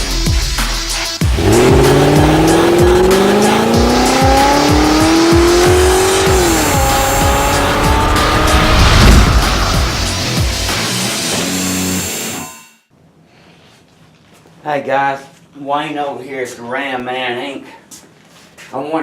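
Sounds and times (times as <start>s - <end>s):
music with heavy beat: 0.0s - 12.4s
car engine revving: 1.2s - 11.6s.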